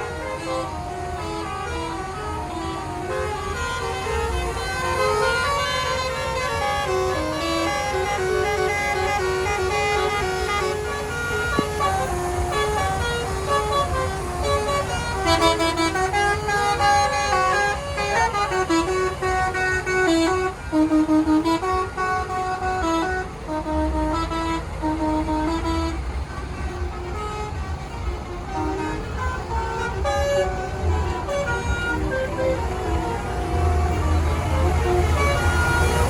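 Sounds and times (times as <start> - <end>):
bus engine rumble: 0.0 - 36.0
musical air horns playing a tune: 0.0 - 36.0.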